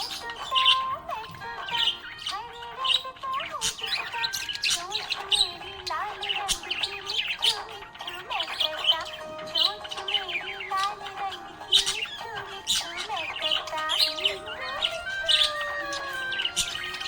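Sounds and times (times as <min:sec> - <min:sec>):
budgerigars chirping and warbling: 0:00.0 - 0:17.0.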